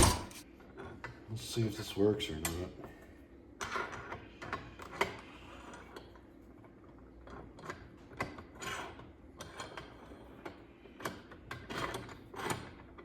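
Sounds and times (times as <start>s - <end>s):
metal scrape: 0.0s - 0.4s.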